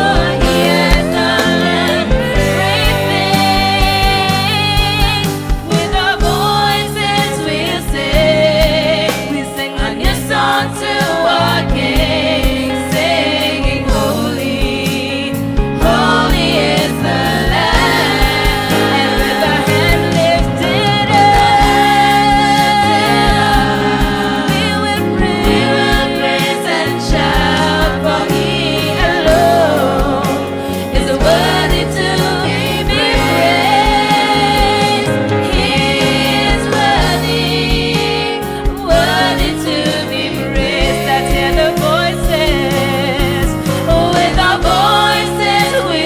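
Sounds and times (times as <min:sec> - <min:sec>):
band with steady beat: 0:00.0 - 0:46.0
youth choir singing gospel: 0:00.0 - 0:46.0.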